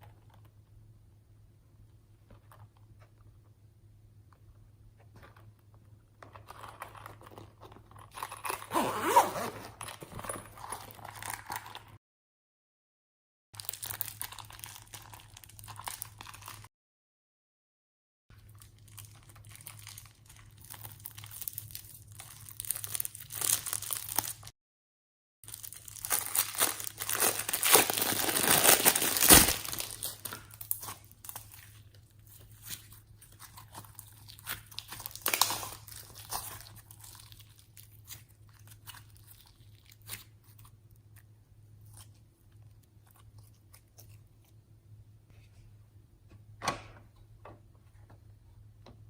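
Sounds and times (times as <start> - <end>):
slime squishing and crackling: 13.6 - 16.6, 18.5 - 24.5, 25.5 - 44.5.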